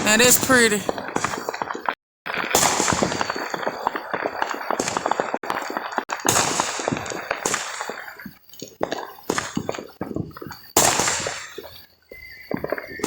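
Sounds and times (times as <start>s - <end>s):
fireworks bangs: 0.0s - 8.3s
fireworks crackling: 0.0s - 9.9s.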